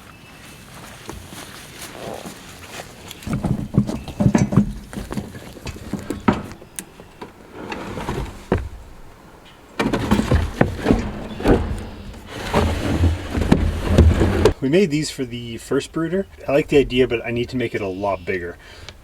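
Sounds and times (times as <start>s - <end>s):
wooden box knocking and clattering: 3.2s - 7.4s, 9.8s - 14.6s.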